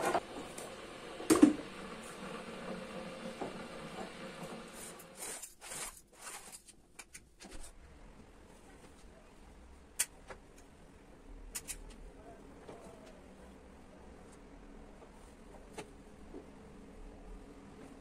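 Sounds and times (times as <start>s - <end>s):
rustling and brushing: 4.7s - 6.8s.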